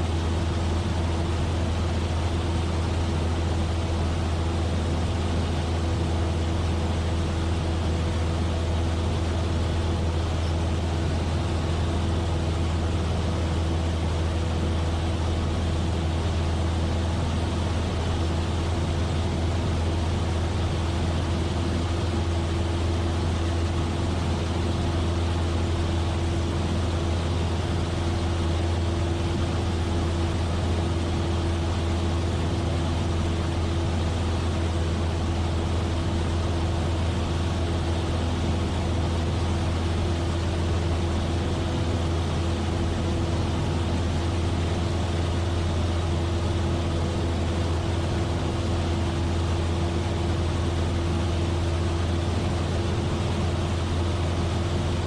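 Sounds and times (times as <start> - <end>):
airplane engine and propeller droning: 0.0 - 55.0.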